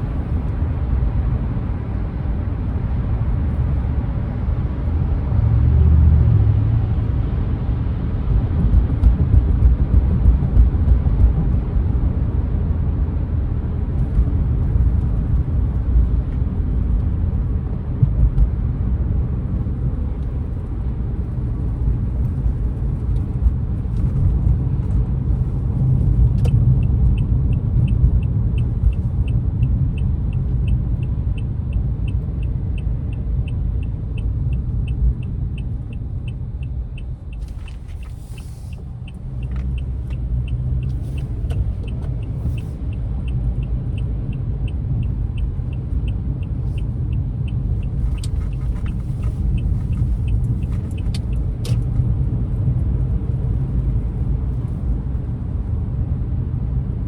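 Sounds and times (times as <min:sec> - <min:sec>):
car cabin road rumble: 0:00.0 - 0:57.0
turn signal ticking: 0:08.2 - 0:12.0, 0:25.6 - 0:54.8.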